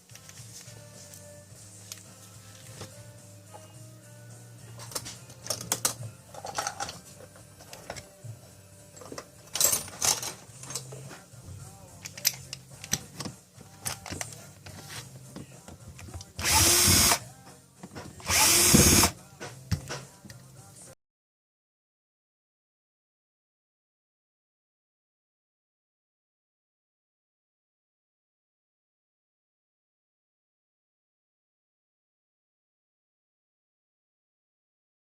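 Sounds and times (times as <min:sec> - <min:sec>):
drill handling clicks and knocks: 0:04.8 - 0:07.0, 0:17.8 - 0:20.4
drill motor running: 0:16.4 - 0:17.2, 0:18.2 - 0:19.2.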